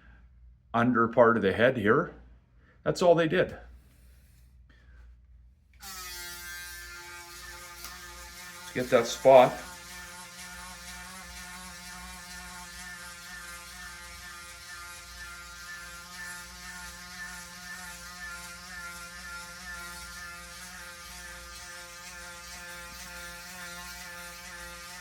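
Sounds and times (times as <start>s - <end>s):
electric shaver buzzing: 5.8s - 25.0s.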